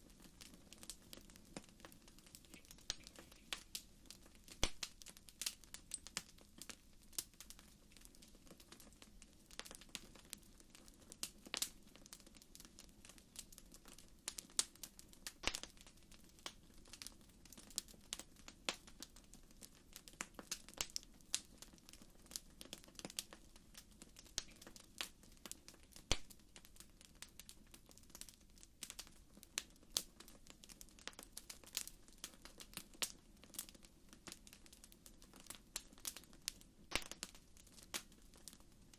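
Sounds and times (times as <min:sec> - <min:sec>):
campfire crackling and popping: 0:00.0 - 0:38.9.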